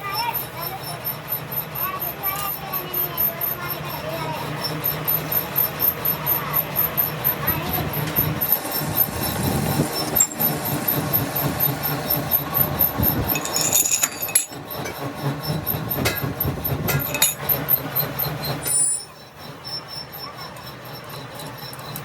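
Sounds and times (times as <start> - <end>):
metalworking machinery humming and rattling: 0.0 - 22.0
metal on metal squeals: 18.2 - 22.0.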